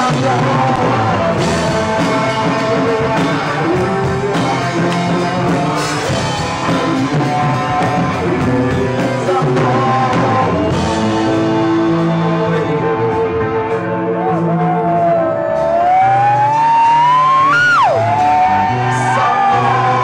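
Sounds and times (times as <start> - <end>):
drum kit steady beat: 0.0 - 20.0
guitar: 0.0 - 20.0
person singing: 0.0 - 20.0.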